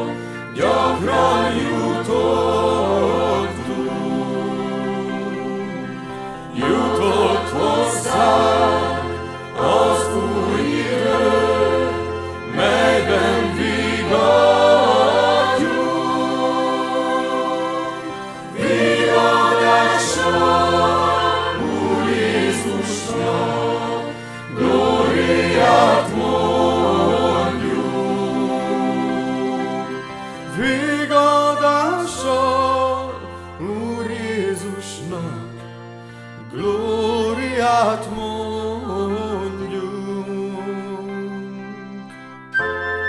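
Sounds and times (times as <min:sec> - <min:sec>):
vocal ensemble singing: 0:00.0 - 0:35.6, 0:36.4 - 0:42.0
singers breathing: 0:00.1 - 0:00.5, 0:18.0 - 0:18.6, 0:24.0 - 0:24.6, 0:30.1 - 0:30.5, 0:36.0 - 0:36.4.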